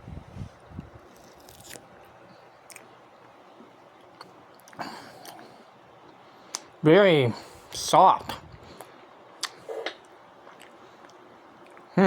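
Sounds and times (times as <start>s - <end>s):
person chewing: 1.0s - 3.0s, 4.1s - 6.7s, 8.7s - 12.0s.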